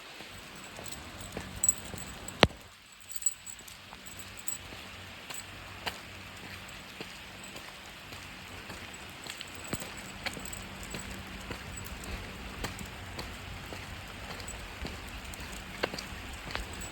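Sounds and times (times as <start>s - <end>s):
steady rain: 3.8s - 16.9s.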